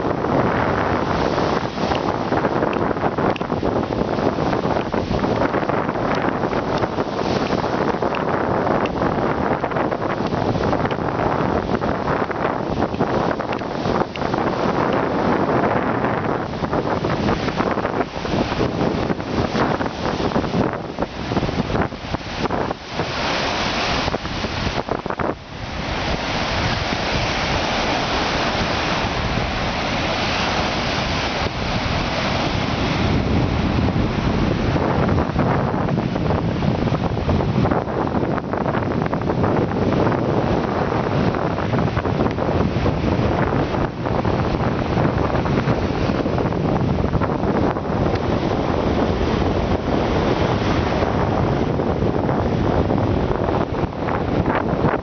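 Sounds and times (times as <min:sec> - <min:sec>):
waves breaking on shore: 0:00.0 - 0:55.0
wind buffeting microphone: 0:00.0 - 0:55.0.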